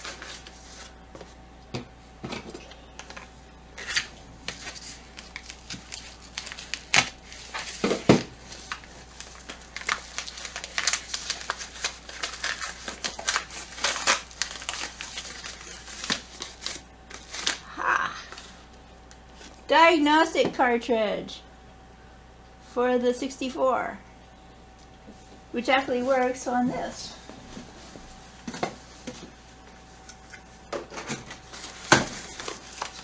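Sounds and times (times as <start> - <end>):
packing material crinkling: 3.8 - 18.5, 31.2 - 33.0.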